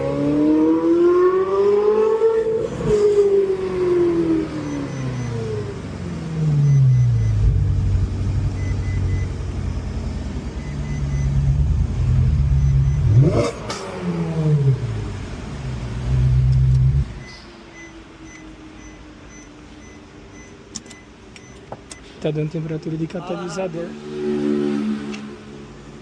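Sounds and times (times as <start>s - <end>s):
car engine revving: 0.0s - 17.3s, 23.5s - 26.0s.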